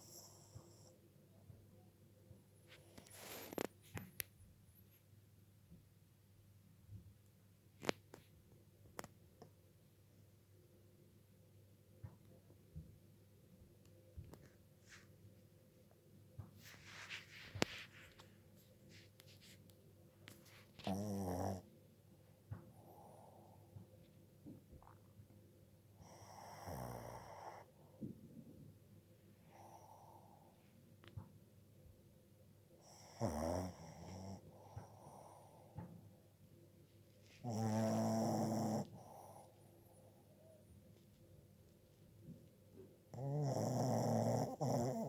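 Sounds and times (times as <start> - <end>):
pet snoring: 0.0 - 0.9, 20.8 - 21.6, 26.0 - 27.7, 32.8 - 35.8, 37.4 - 39.5, 43.1 - 45.0.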